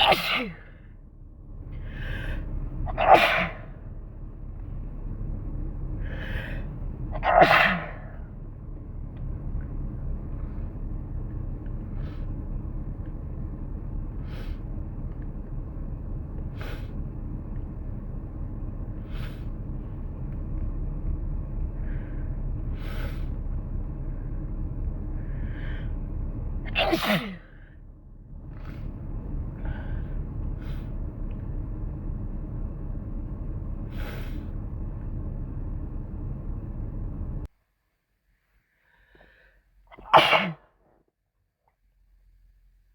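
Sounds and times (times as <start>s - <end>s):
person sneezing: 0.0s - 0.8s, 2.9s - 3.8s, 7.2s - 8.2s, 26.7s - 27.6s, 39.9s - 40.7s
low background hum: 0.0s - 42.9s
person breathing in: 6.0s - 6.8s, 16.5s - 17.0s, 21.8s - 23.4s, 29.6s - 31.0s, 33.9s - 34.5s, 38.8s - 39.7s.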